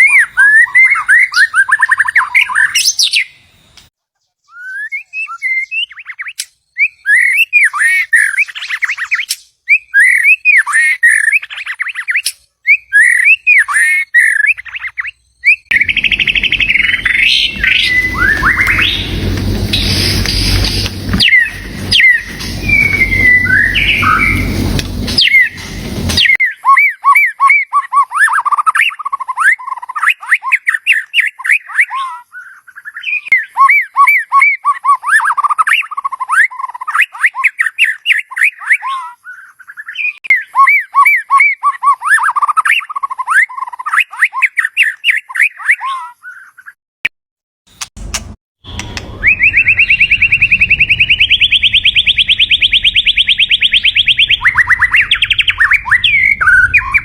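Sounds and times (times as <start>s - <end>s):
bird singing whistled phrases: 0.0s - 3.4s, 4.4s - 46.8s, 49.0s - 57.0s
low rushing noise: 15.7s - 26.4s, 48.0s - 57.0s.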